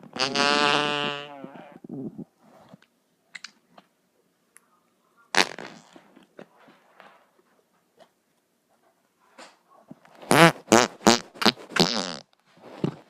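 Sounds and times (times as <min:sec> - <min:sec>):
fart sound effect: 0:00.0 - 0:02.2, 0:05.4 - 0:06.0, 0:10.3 - 0:12.3.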